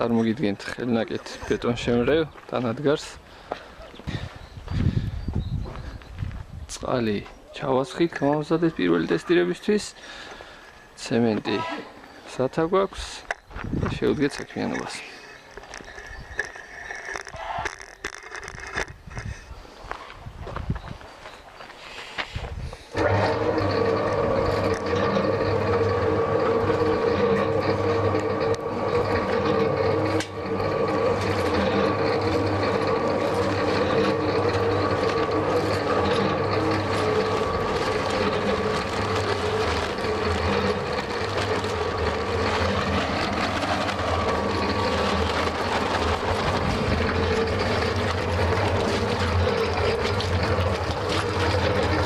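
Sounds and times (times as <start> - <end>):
concrete mixer humming: 0.0 - 5.2, 8.0 - 19.6, 22.8 - 52.0
rattle of turning drum: 14.2 - 19.4, 22.9 - 52.0.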